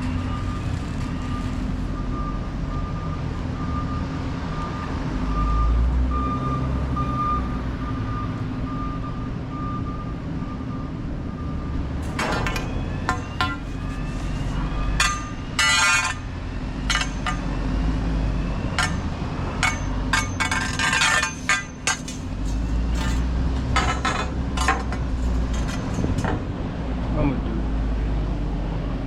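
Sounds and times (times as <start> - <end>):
reversing alarm beeping: 0.0 - 24.7
metallic clanks: 12.0 - 17.6, 18.7 - 26.5.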